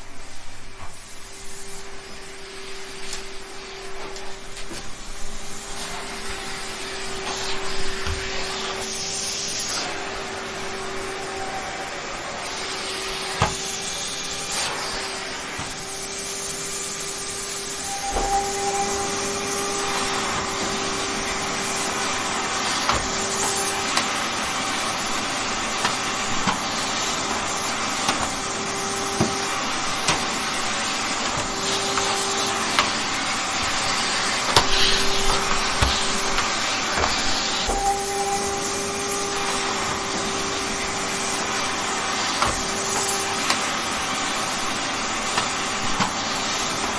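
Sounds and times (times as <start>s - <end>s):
vacuum cleaner running: 0.0s - 46.9s
higher tone: 17.7s - 20.7s.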